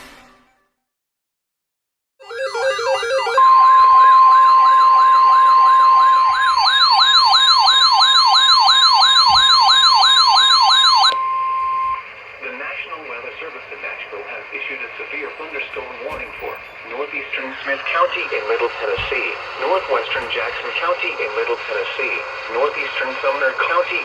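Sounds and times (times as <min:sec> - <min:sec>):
rapid electronic siren wail: 0:02.2 - 0:12.2
steady alarm tone: 0:02.2 - 0:24.0.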